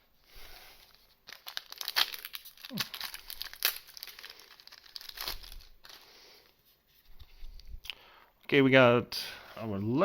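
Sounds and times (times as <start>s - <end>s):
foil wrapper crinkling: 0.7s - 6.2s.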